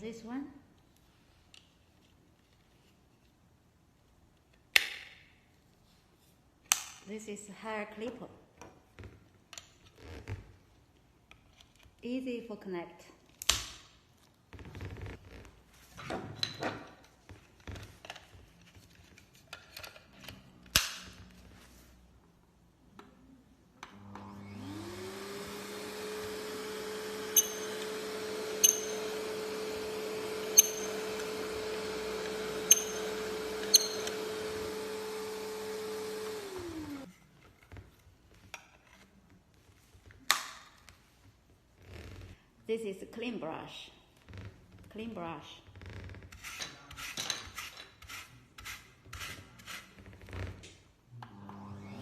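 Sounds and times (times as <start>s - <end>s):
vacuum motor humming: 23.9s - 37.1s, 51.2s - 52.0s.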